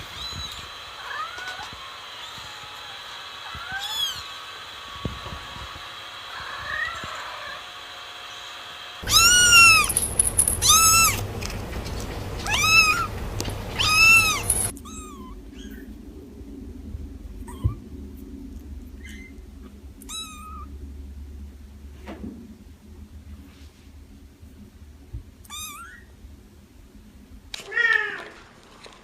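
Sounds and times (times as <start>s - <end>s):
kitten meowing: 0.1s - 4.3s, 9.0s - 11.2s, 12.4s - 13.1s, 13.7s - 15.9s, 17.5s - 17.8s, 20.0s - 20.7s, 25.4s - 26.1s.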